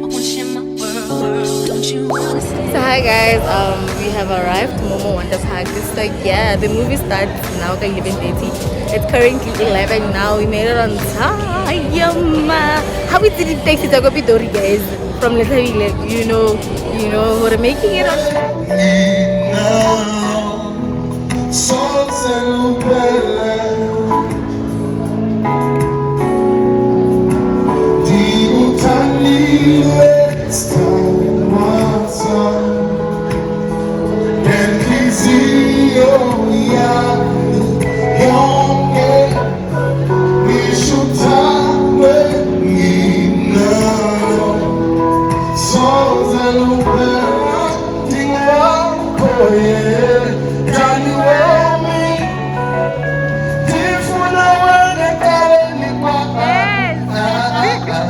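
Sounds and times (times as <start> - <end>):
woman singing: 0.0 - 20.4, 55.2 - 58.0
instrumental accompaniment: 0.0 - 58.0
man singing: 0.0 - 58.0.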